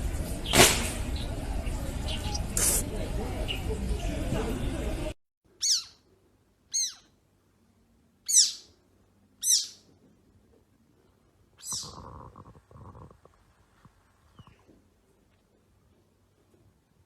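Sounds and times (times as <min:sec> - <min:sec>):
kitten mewing: 0:11.6 - 0:13.2.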